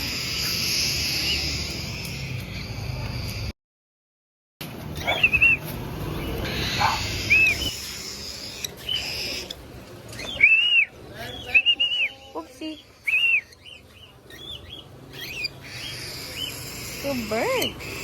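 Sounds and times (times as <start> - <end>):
cockatiel chirping: 6.4 - 11.6, 13.0 - 18.0.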